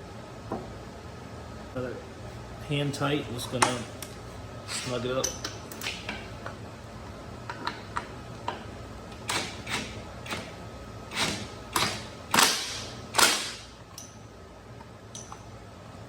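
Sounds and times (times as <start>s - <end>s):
wrench clinking on metal: 13.9s - 14.2s, 15.1s - 15.4s.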